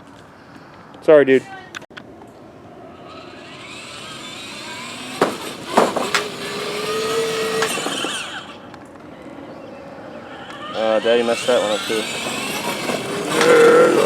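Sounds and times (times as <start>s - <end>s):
steady whine: 2.3s - 14.0s
toy car motors whirring: 2.9s - 8.7s, 10.2s - 14.0s
sharp knocks: 5.2s - 6.3s.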